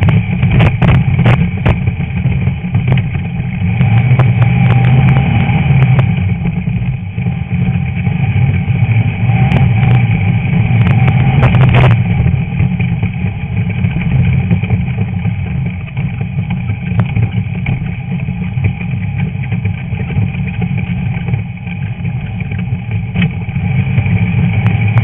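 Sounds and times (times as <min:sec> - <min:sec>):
car engine running hard: 0:00.0 - 0:25.0.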